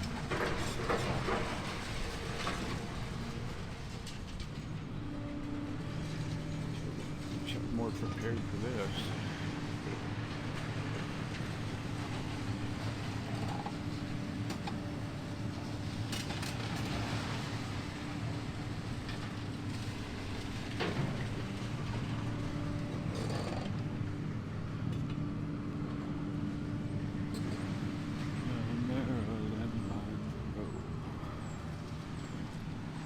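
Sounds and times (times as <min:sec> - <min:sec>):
clanks and creaks: 0:00.0 - 0:03.0, 0:13.2 - 0:14.8, 0:22.9 - 0:23.9
heavy machinery engine running: 0:00.0 - 0:33.0.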